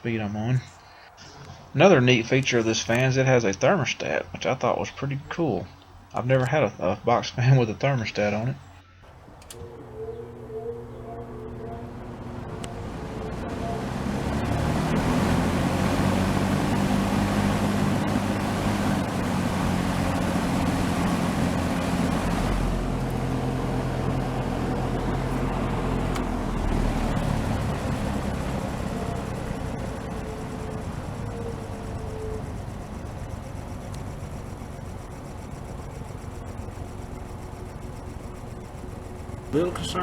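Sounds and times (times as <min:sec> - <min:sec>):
box fan running: 0:09.0 - 0:40.0.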